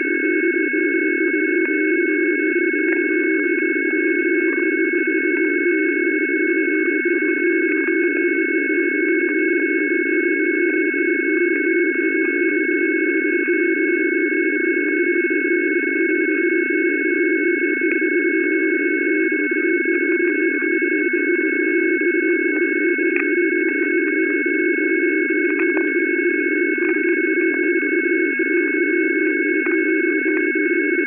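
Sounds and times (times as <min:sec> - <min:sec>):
shortwave radio signal drone: 0:00.0 - 0:31.0
high steady radio tones: 0:16.2 - 0:31.0.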